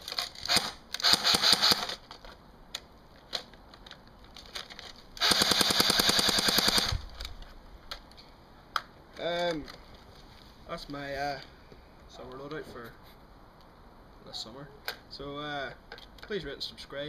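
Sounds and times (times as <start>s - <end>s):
airsoft gun firing full-auto burst: 0.5s - 1.9s, 5.2s - 7.0s.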